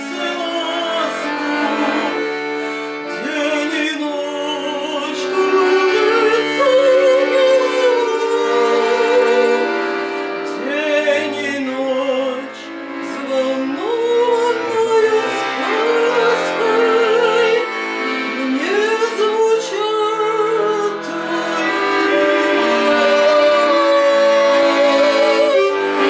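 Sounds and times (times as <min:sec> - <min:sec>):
instrumental accompaniment: 0:00.0 - 0:26.0
woman singing with vibrato: 0:18.3 - 0:26.0.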